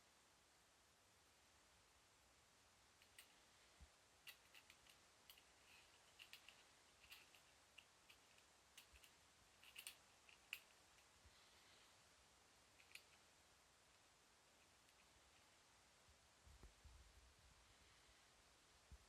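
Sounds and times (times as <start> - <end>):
light irregular clicks and ticks: 2.9 - 11.2, 12.7 - 14.0, 14.6 - 15.6.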